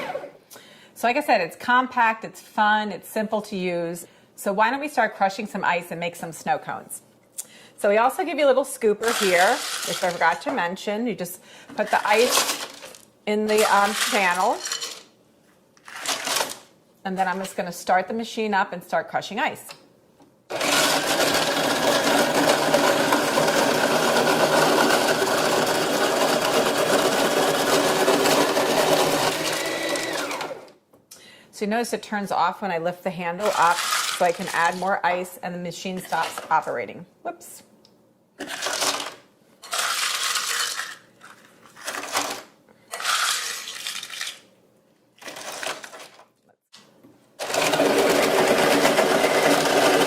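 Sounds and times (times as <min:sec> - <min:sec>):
snow cone maker crushing ice: 0:20.5 - 0:30.7, 0:47.4 - 0:50.0.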